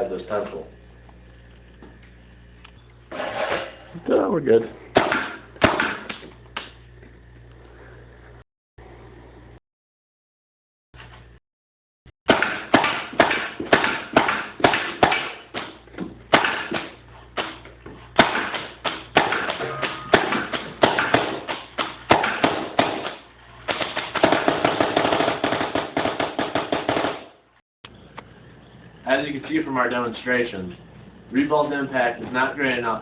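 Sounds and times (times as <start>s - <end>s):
paintball gun shots: 5.0s - 6.2s, 12.3s - 15.7s, 18.2s - 27.4s.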